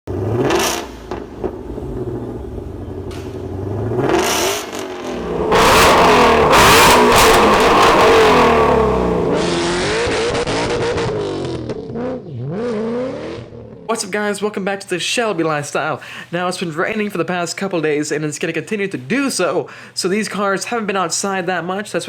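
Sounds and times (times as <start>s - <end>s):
car engine revving: 0.1s - 13.8s.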